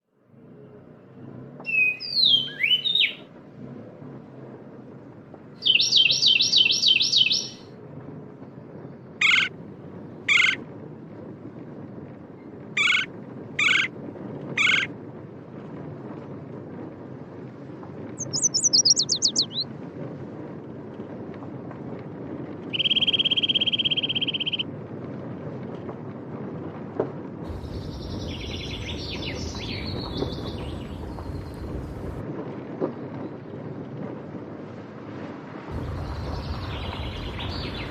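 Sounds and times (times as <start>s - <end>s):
birds calling and singing: 1.7s - 3.2s, 5.6s - 7.6s, 9.2s - 9.5s, 12.8s - 13.9s, 14.6s - 14.9s, 18.2s - 19.6s, 22.7s - 24.6s, 27.6s - 32.2s, 36.0s - 37.9s
steady low rumble: 7.7s - 25.4s, 27.4s - 32.4s, 35.6s - 37.9s.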